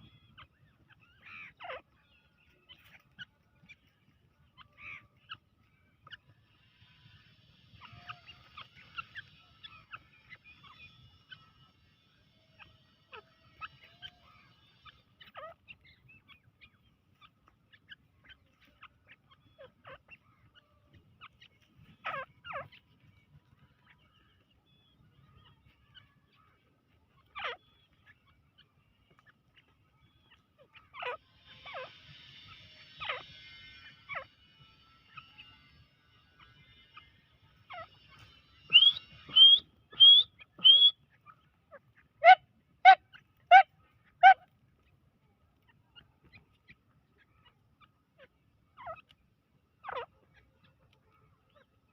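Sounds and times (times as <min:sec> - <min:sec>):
francolin calling: 0:37.7 - 0:41.2.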